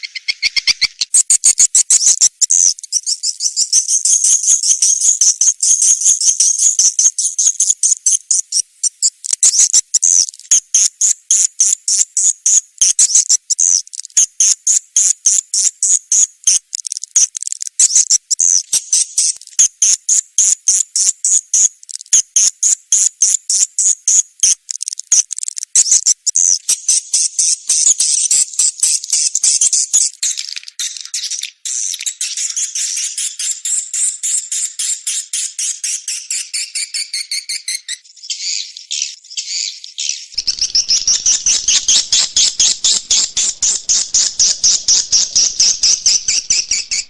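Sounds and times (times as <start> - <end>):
rapid high-pitched swiftlet chirps: 26.7 - 38.0, 40.4 - 47.0.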